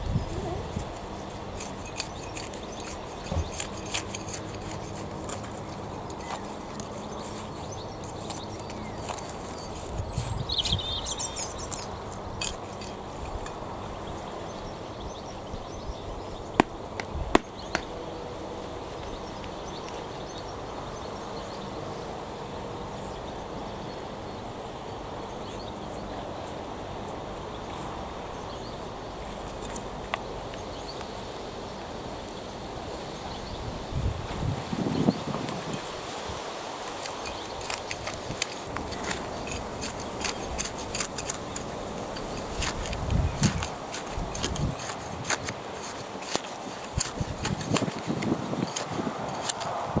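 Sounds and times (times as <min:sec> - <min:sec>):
wind on microphone: 0:00.0 - 0:02.3, 0:33.4 - 0:36.5, 0:37.3 - 0:50.0
bird chirps: 0:07.1 - 0:11.9.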